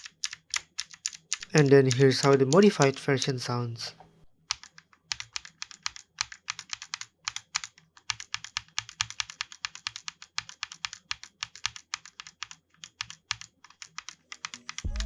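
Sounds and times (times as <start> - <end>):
fast mechanical keyboard typing: 0.0 - 3.4, 4.5 - 15.0.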